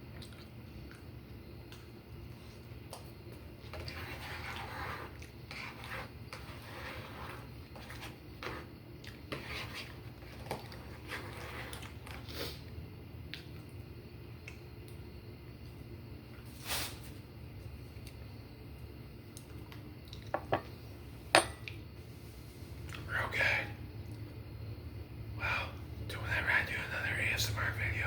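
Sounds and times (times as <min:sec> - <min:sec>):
utensil scraping a dish: 0:03.7 - 0:08.7, 0:09.3 - 0:12.2.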